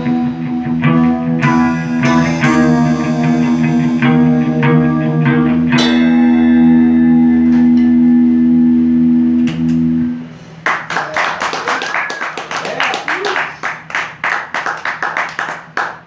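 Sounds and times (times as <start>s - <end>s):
rock band closing chords: 0.0s - 12.7s
people clapping: 10.6s - 16.0s.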